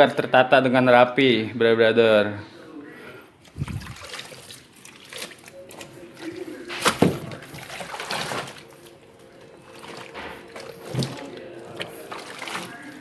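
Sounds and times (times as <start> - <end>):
water dripping and splashing: 3.4 - 13.0
wet cloth rustling: 3.4 - 13.0.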